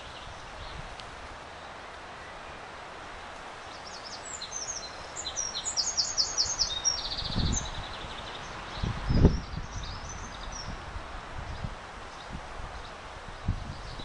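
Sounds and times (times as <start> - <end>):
outdoor hiss: 0.0 - 14.0
songbird singing with trill: 3.6 - 10.8, 11.4 - 14.0.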